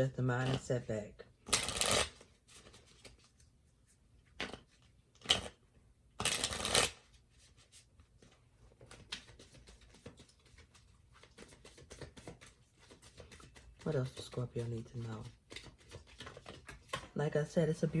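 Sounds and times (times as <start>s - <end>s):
cards being shuffled: 0.4s - 3.5s, 4.2s - 5.6s, 6.2s - 17.2s
cards ticking and rustling: 1.5s - 3.4s, 6.2s - 7.0s, 8.2s - 17.2s.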